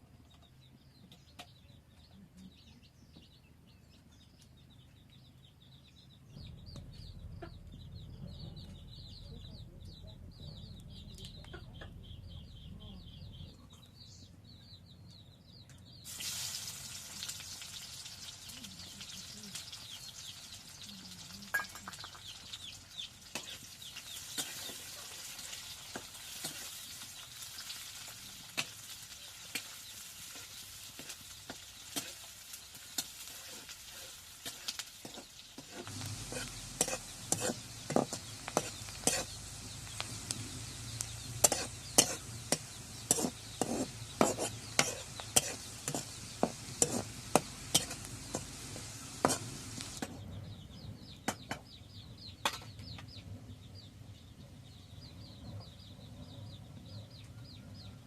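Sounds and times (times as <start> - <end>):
faint bird chirps: 0.0 - 16.2
food sizzling in hot oil: 16.0 - 50.2
utensil scraping a pot: 31.8 - 40.0, 41.3 - 50.1.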